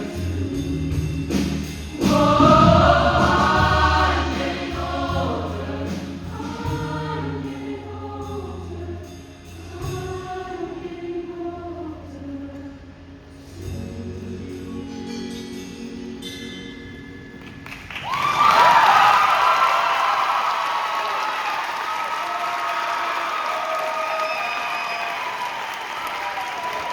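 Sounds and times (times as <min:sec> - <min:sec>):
instrumental accompaniment: 0:00.0 - 0:11.0
choir singing in harmony: 0:00.0 - 0:17.0.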